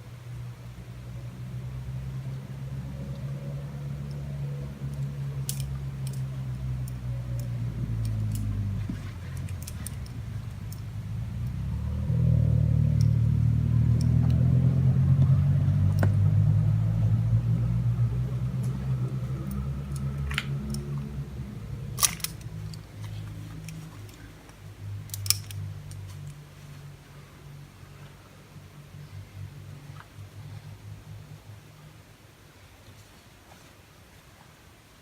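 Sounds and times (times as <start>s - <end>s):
vehicle engine hum: 0.0s - 32.7s
sharp clicks: 21.9s - 26.4s.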